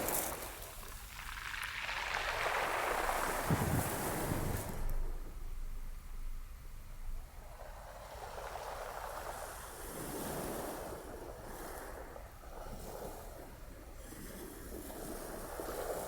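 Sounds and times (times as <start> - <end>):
ocean waves washing onto shore: 0.0 - 5.4.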